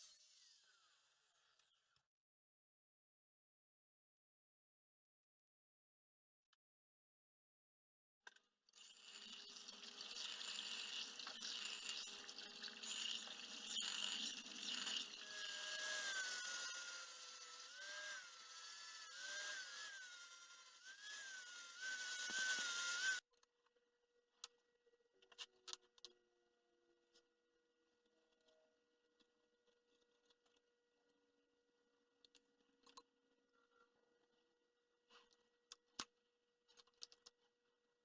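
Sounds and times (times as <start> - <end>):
tool scraping steel: 8.8 - 23.2
high-pitched squeal: 9.4 - 23.2.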